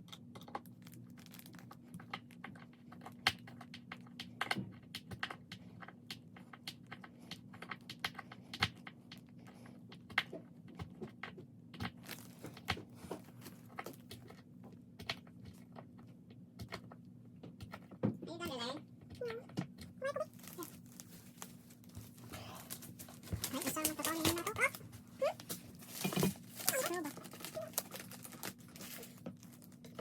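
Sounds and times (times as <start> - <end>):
packaging crinkling: 0.1 - 3.2, 11.9 - 14.1, 20.0 - 30.0.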